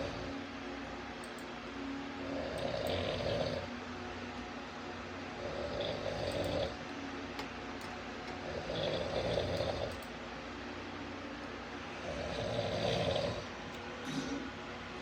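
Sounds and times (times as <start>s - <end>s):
man snoring: 2.2s - 3.7s, 5.4s - 6.8s, 8.4s - 10.0s, 12.0s - 13.5s.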